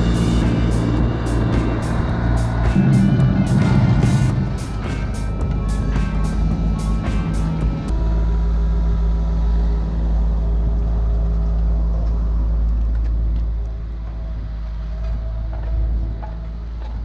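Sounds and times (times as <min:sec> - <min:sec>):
music: 0:00.0 - 0:09.4
heavy machinery engine humming: 0:00.0 - 0:17.0.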